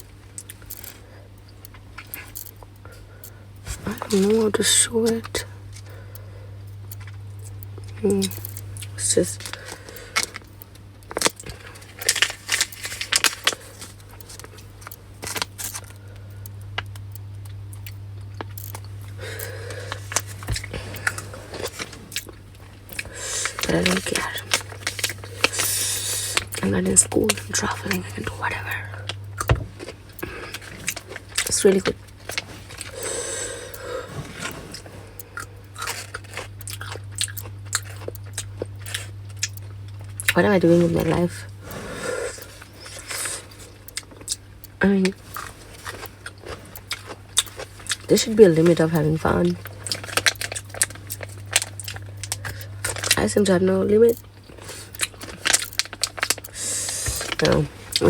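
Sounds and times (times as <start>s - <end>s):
low hum: 0.0s - 58.0s
person crunching a crunchy snack: 6.9s - 16.0s, 27.2s - 40.4s, 41.7s - 48.2s, 49.6s - 53.2s, 54.1s - 58.0s
plastic snack packet crinkling: 11.1s - 16.0s, 18.4s - 33.6s, 45.0s - 58.0s.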